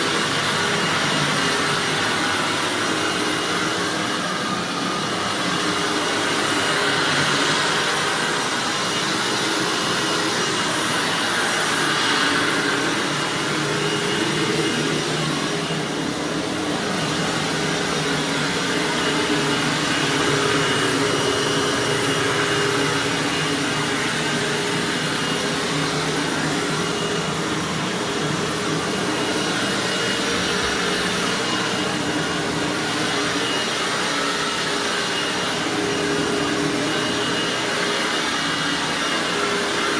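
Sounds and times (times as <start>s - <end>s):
vacuum cleaner motor whine: 0.0s - 39.9s.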